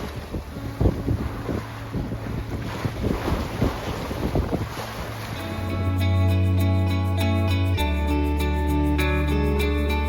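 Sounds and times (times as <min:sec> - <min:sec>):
wind buffeting microphone: 0:00.0 - 0:06.7.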